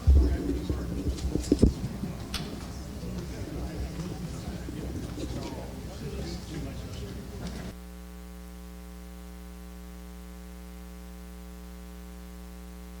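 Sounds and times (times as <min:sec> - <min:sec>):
room voices: 0:00.0 - 0:07.8
electrical mains hum: 0:00.0 - 0:13.0.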